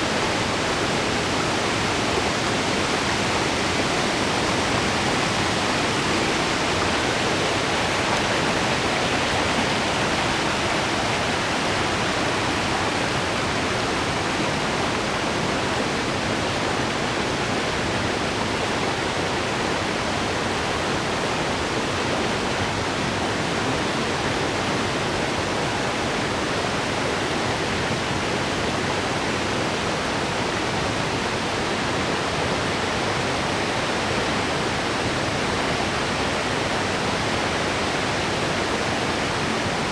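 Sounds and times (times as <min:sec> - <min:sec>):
small waterfall pouring: 0:00.1 - 0:14.6.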